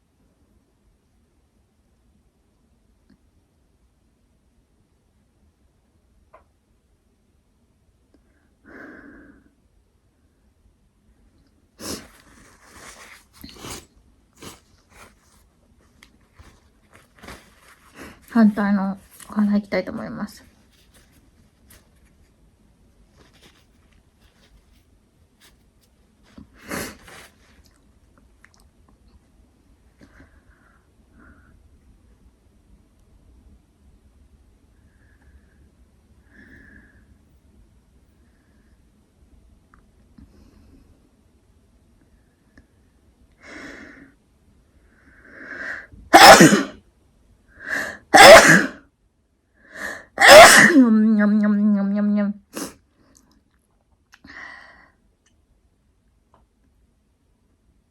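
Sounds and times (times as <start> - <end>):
paper crackling in nostril: 12.0 - 22.3
person sneezing: 46.1 - 46.8, 48.0 - 48.8, 50.2 - 50.9.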